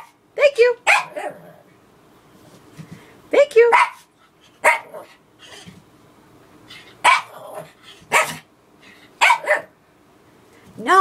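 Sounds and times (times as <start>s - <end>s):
dog barking: 0.8s - 1.4s, 3.7s - 5.1s, 7.0s - 8.5s, 9.2s - 9.7s.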